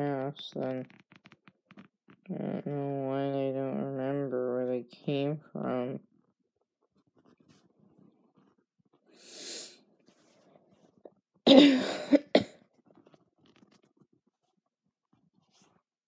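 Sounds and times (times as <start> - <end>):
woman coughing: 11.5 - 12.6.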